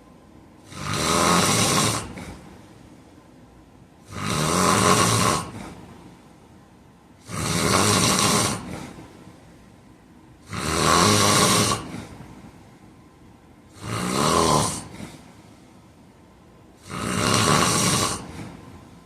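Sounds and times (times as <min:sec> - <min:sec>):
man snoring loudly: 0:00.6 - 0:02.4, 0:04.0 - 0:05.8, 0:07.2 - 0:09.0, 0:10.4 - 0:12.2, 0:13.7 - 0:15.2, 0:16.8 - 0:18.6.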